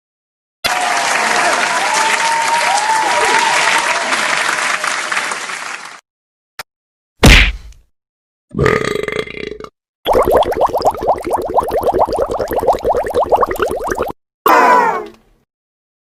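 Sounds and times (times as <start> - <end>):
crowd applause: 0.6 - 6.0
crowd cheering calls: 0.6 - 6.0.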